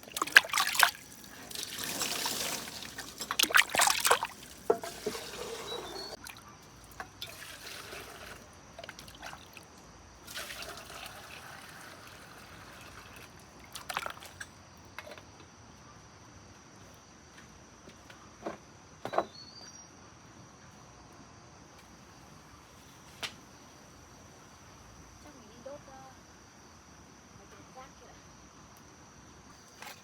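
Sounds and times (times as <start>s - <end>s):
water trickling and pouring: 0.0s - 14.4s.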